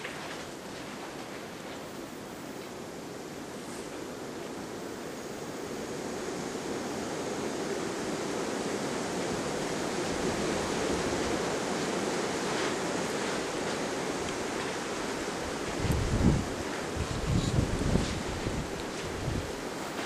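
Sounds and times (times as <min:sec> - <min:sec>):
strong blizzard wind: 0:00.0 - 0:20.0.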